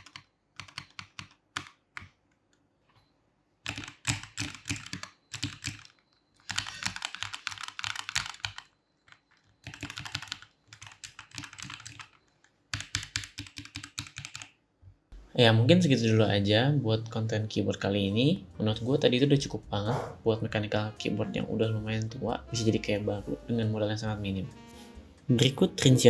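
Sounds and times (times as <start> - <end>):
mechanical keyboard typing: 0.0 - 2.2, 3.6 - 14.6.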